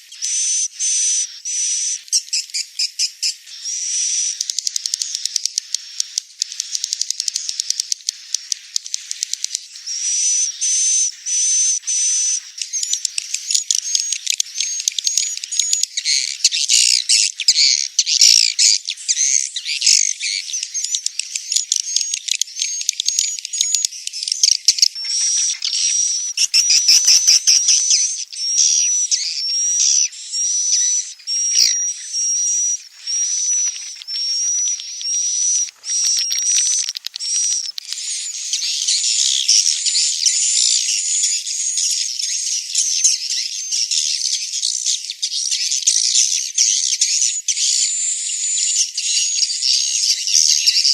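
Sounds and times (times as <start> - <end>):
high-pitched bird twittering: 0.0 - 50.9
rapid clicking chirps: 4.0 - 16.4, 24.9 - 41.2.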